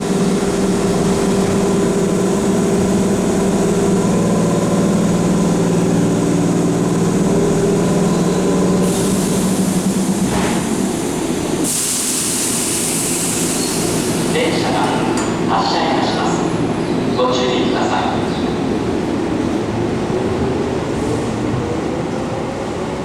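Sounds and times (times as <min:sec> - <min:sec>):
electric train equipment humming: 0:00.0 - 0:21.0.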